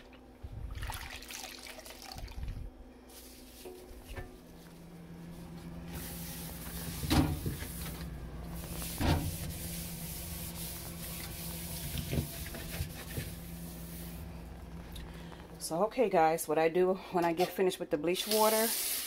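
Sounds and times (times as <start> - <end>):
refrigerator parts clunking: 6.5 - 9.6
hiss: 18.6 - 19.0.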